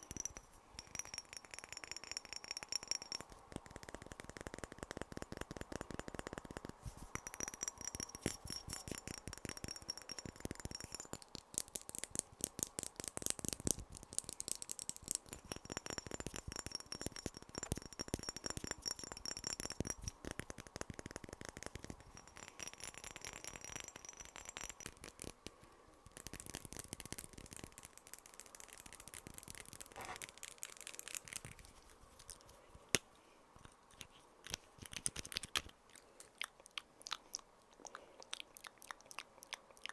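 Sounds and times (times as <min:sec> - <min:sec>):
fast tapping and clicking: 0:00.0 - 0:31.5
high ringing tone: 0:07.1 - 0:11.1.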